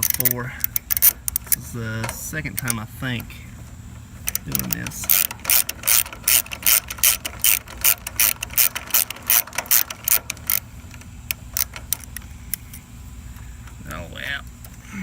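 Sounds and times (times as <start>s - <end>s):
socket ratchet clicking: 0.0s - 2.8s, 4.2s - 12.8s.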